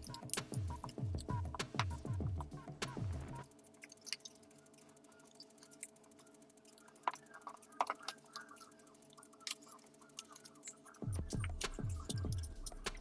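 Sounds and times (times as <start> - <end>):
music with deep bass notes: 0.0 - 3.4, 11.0 - 13.0
background music: 0.0 - 3.5.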